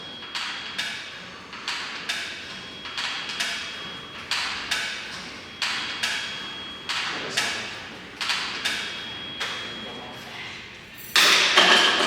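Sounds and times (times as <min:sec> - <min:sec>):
ringing knocks in pairs: 0:11.2 - 0:12.0.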